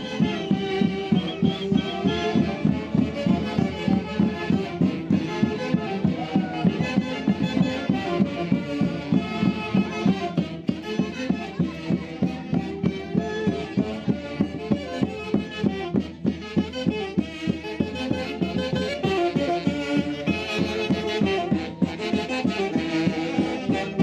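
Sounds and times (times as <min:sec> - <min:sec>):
folk orchestra playing: 0:00.0 - 0:24.0.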